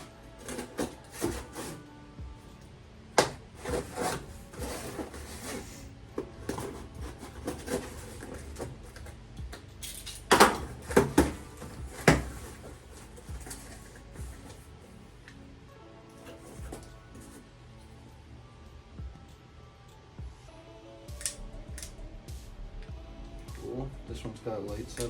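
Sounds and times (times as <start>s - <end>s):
packaging rustling and scraping: 0.0s - 1.9s, 3.2s - 9.2s, 10.2s - 14.8s, 16.2s - 17.4s.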